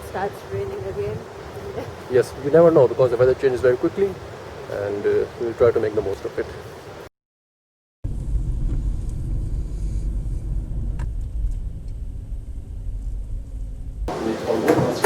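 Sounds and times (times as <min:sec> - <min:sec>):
car moving road and engine noise: 0:08.1 - 0:15.0.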